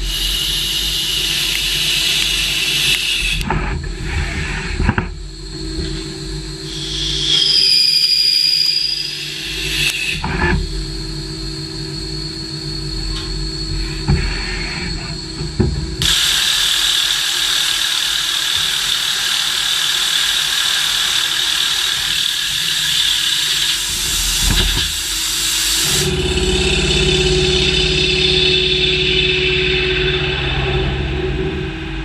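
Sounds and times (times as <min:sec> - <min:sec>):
machine hissing: 0:00.0 - 0:03.4, 0:06.6 - 0:10.2, 0:16.0 - 0:32.0
low machine hum: 0:00.0 - 0:32.0.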